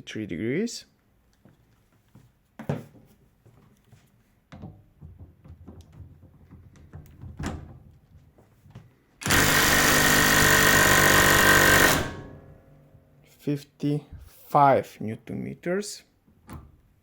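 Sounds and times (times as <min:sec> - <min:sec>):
knocks and clicks of handling: 0:02.6 - 0:08.9
impact wrench hammering: 0:09.2 - 0:12.6.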